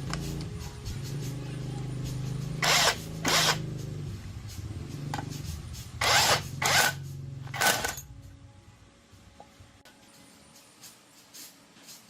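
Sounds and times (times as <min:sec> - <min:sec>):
hand tool rasping strokes: 0:02.0 - 0:03.6, 0:04.5 - 0:08.0.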